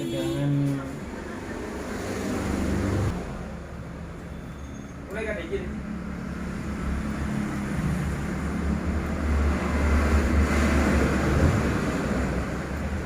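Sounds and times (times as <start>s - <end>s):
vehicle passing by: 1.0s - 3.6s, 5.8s - 13.0s.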